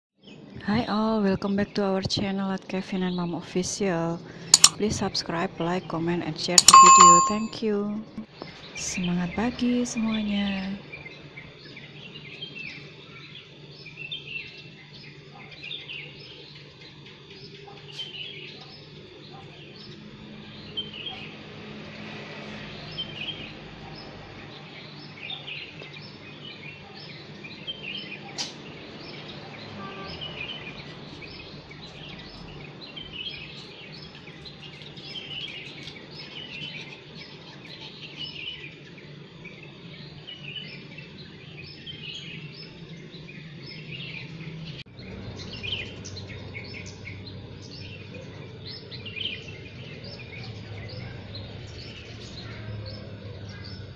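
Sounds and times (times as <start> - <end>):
low background hum: 0.3 - 21.1
small birds chirping: 22.8 - 53.9.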